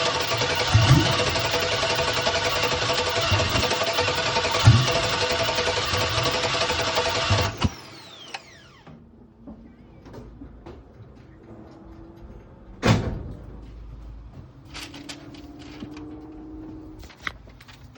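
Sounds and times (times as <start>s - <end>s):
engine starter cranking: 0.0s - 8.8s.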